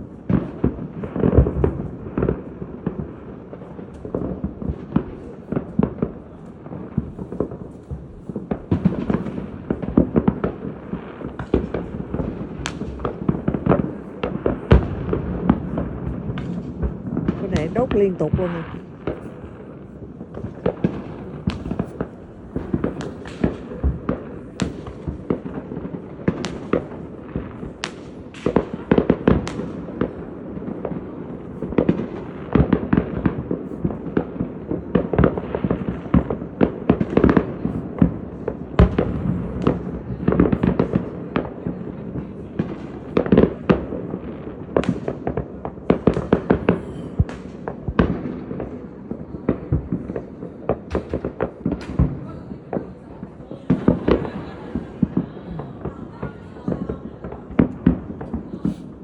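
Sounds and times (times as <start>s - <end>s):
fireworks bangs and pops: 0.0s - 59.0s.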